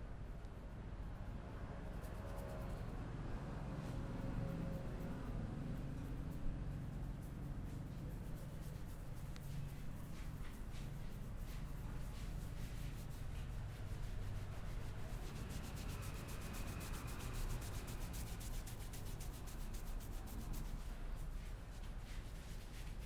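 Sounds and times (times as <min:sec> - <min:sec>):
hands rubbing through hair: 0:08.0 - 0:15.0.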